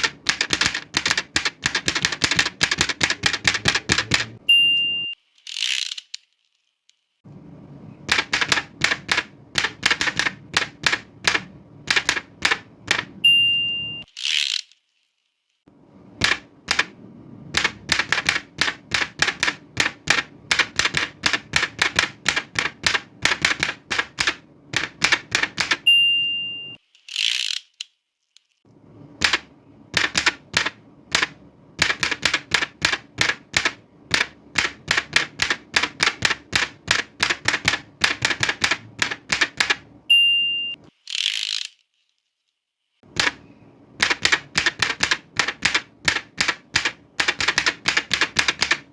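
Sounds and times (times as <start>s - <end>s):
typewriter carriage return: 0.0s - 4.4s, 8.1s - 13.2s, 16.2s - 16.9s, 17.5s - 25.9s, 29.2s - 39.8s, 43.2s - 48.9s
typewriter keystrokes: 0.0s - 4.4s, 8.1s - 13.2s, 16.2s - 25.9s, 29.2s - 39.9s, 43.1s - 43.4s, 44.0s - 48.9s
typewriter bell ding: 4.5s - 5.2s, 13.2s - 14.0s, 25.8s - 26.8s, 40.1s - 40.8s.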